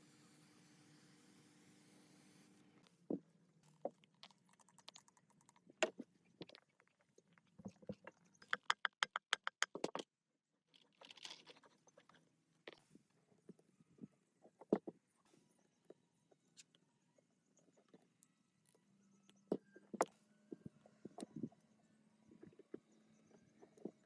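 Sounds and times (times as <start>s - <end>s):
metal parts clicking and knocking: 8.0s - 10.0s, 10.8s - 12.1s.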